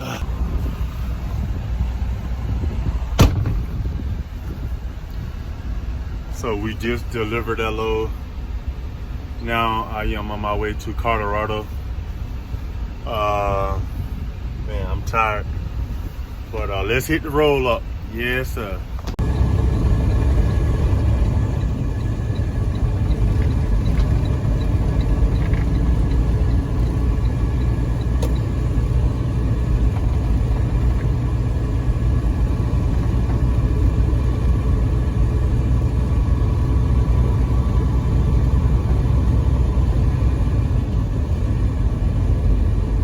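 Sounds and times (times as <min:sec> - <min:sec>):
truck diesel engine rumbling: 0:00.0 - 0:43.0
faint ticking: 0:19.2 - 0:34.7.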